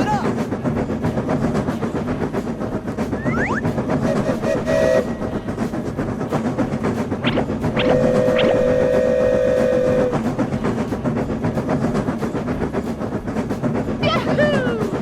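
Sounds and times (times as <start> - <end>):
train wheels clattering: 0.0 - 15.0
train horn chord: 4.1 - 5.4, 7.8 - 10.4
brief whistle: 7.8 - 10.2.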